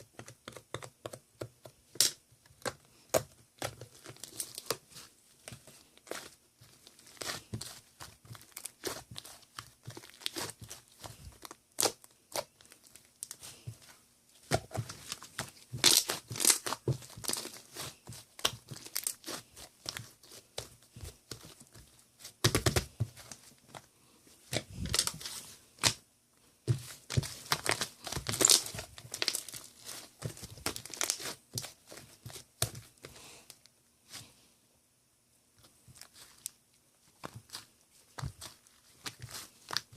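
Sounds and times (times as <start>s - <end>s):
wrapping material crinkling and tearing: 3.6s - 5.1s, 5.7s - 13.7s, 14.7s - 23.6s, 24.6s - 26.0s, 26.8s - 32.7s, 36.0s - 36.6s.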